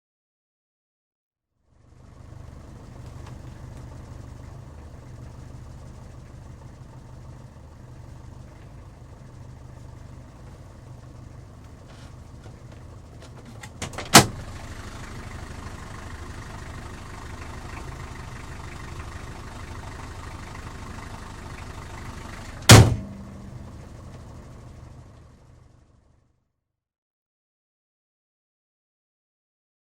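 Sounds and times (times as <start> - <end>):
car engine and road rumble: 1.6 - 26.3
loud sharp thumps: 22.7 - 23.6.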